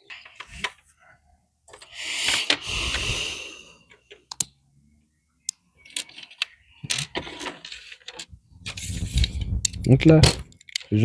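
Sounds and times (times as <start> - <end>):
plastic bricks clicking: 5.8 - 11.0.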